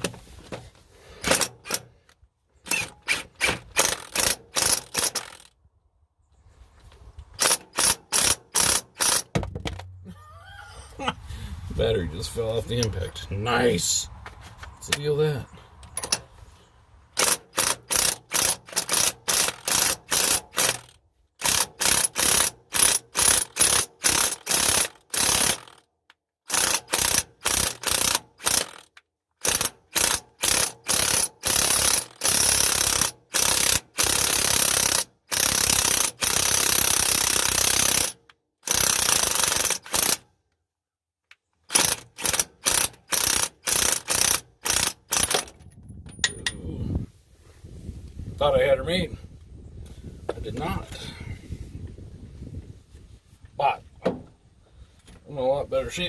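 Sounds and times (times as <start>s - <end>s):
impact wrench hammering: 1.2s - 1.9s, 2.7s - 5.5s, 7.4s - 10.0s, 17.2s - 25.8s.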